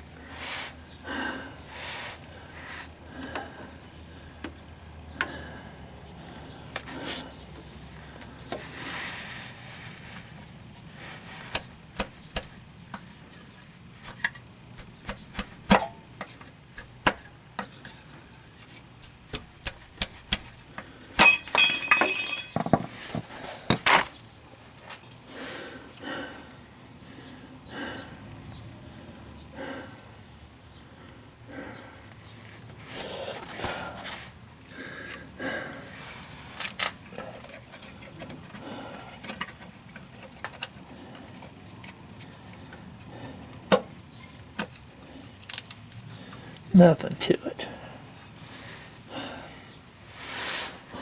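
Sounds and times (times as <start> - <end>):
metal tools clinking: 21.2 - 24.1.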